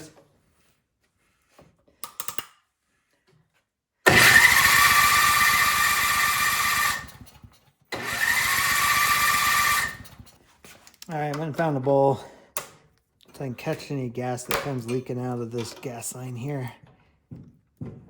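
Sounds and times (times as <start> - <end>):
electric starter cranking engine: 4.1 - 10.3.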